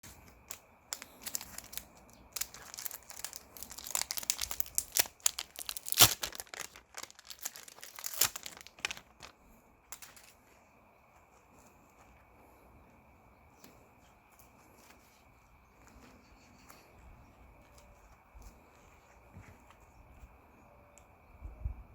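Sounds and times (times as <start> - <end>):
crinkling rustling handling noise: 0.0 - 12.7
faint steady high tone: 10.4 - 21.9.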